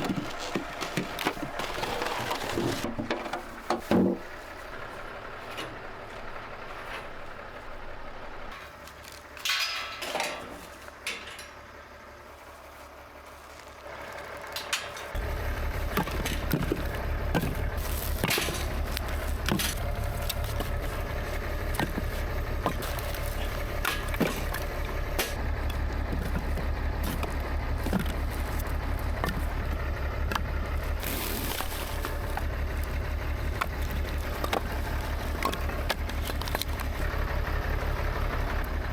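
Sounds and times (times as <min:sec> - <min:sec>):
clunks: 0:00.0 - 0:12.0, 0:13.5 - 0:38.9
tractor diesel engine running: 0:00.0 - 0:38.9
wooden knocks and clatters: 0:15.1 - 0:37.3.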